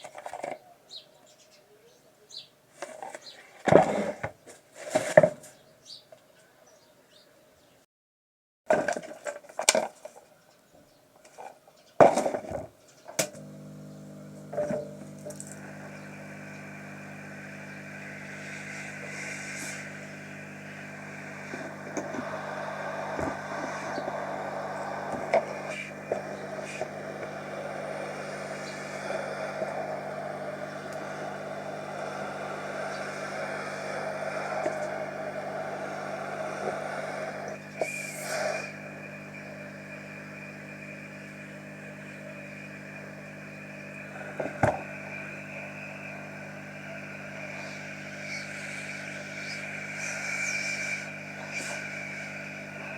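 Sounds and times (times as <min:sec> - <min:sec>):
washing machine motor humming: 0:13.2 - 0:52.9.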